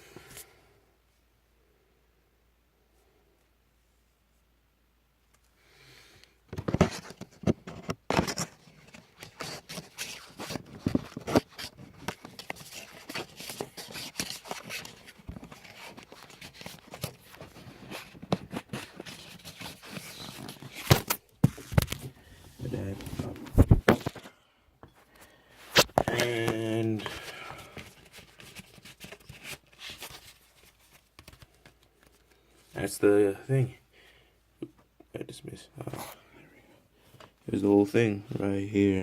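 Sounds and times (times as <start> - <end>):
handling packaging and disc cases: 6.5 - 32.9.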